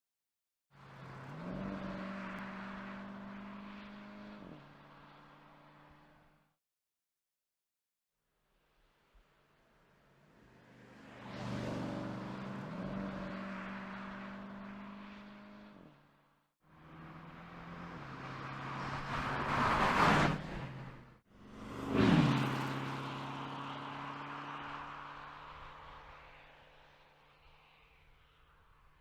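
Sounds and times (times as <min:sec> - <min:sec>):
car engine passing by: 0:00.8 - 0:06.3, 0:10.1 - 0:16.1, 0:16.8 - 0:28.2.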